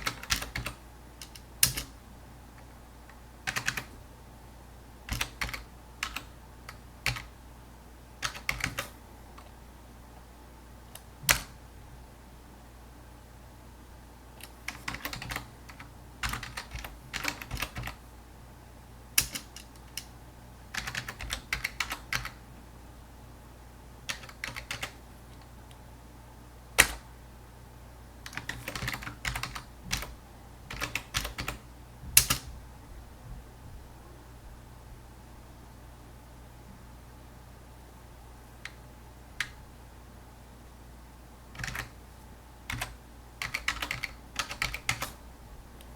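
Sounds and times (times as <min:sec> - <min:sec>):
typing on keyboard: 0:00.0 - 0:02.0, 0:03.5 - 0:03.9, 0:05.1 - 0:07.3, 0:08.2 - 0:08.9, 0:11.0 - 0:11.6, 0:14.4 - 0:18.0, 0:19.2 - 0:20.1, 0:20.7 - 0:22.4, 0:24.1 - 0:25.0, 0:26.8 - 0:27.0, 0:28.3 - 0:30.1, 0:30.7 - 0:31.6, 0:41.6 - 0:41.9, 0:42.7 - 0:45.2
low steady hum: 0:00.0 - 0:45.9.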